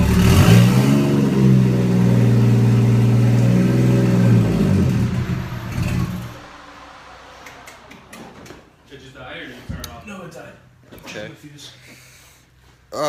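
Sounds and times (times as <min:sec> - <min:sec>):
engine running and stalling: 0:00.0 - 0:09.0.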